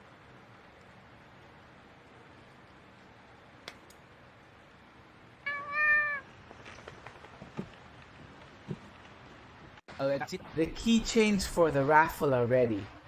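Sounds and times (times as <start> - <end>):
cat meowing: 5.5 - 6.3.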